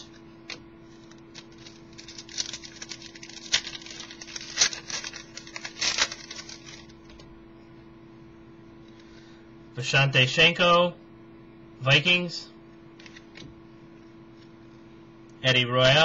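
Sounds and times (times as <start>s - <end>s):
trading cards rustling and snapping: 0.0s - 7.2s, 13.0s - 13.5s.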